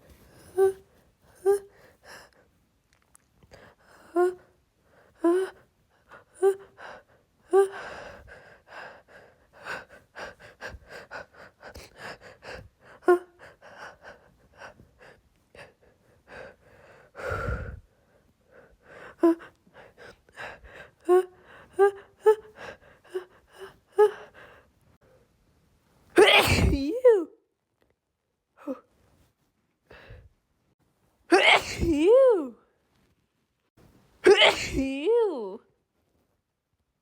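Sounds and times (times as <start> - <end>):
woman gasping before a sneeze: 26.2 - 27.0, 31.3 - 32.1, 34.2 - 35.0.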